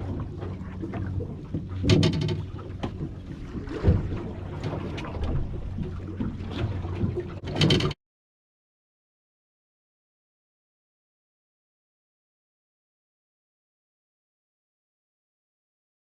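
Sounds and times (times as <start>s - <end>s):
boat engine running: 0.0s - 8.0s
water knocking and splashing on hull: 0.0s - 8.0s.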